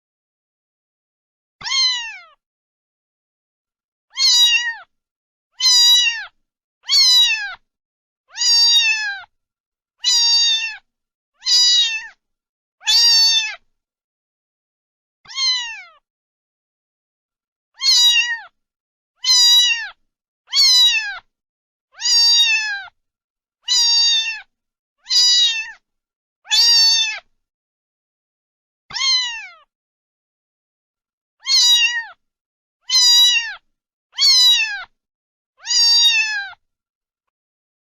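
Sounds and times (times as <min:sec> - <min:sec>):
cat meowing: 0:01.6 - 0:02.4, 0:04.1 - 0:04.9, 0:05.6 - 0:07.6, 0:08.3 - 0:09.3, 0:10.0 - 0:12.2, 0:12.8 - 0:13.6, 0:15.3 - 0:16.0, 0:17.8 - 0:18.6, 0:19.2 - 0:21.3, 0:22.0 - 0:23.0, 0:23.6 - 0:25.8, 0:26.5 - 0:27.3, 0:28.9 - 0:29.7, 0:31.4 - 0:32.2, 0:32.8 - 0:35.0, 0:35.6 - 0:36.6.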